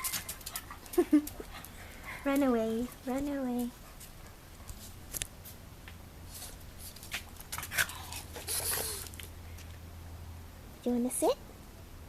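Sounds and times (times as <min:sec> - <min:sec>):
puppies scuffling: 0:00.0 - 0:05.6.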